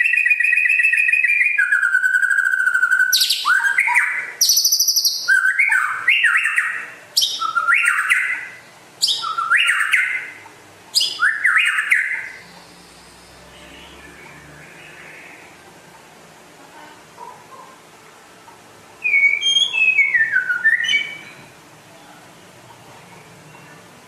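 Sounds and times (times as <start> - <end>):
songbird singing: 0.0 - 16.1, 19.0 - 24.0.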